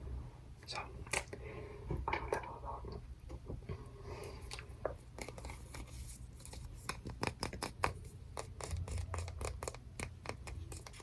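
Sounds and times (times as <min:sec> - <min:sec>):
faint low hum: 0:00.0 - 0:11.0.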